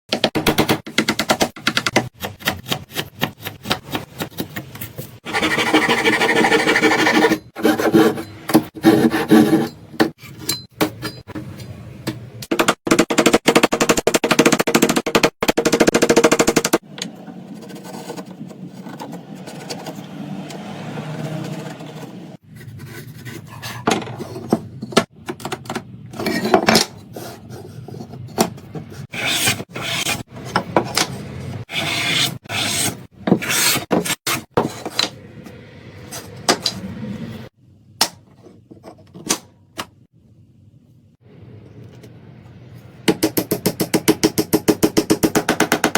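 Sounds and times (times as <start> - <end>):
rasp scraping wood: 5.3 - 8.2.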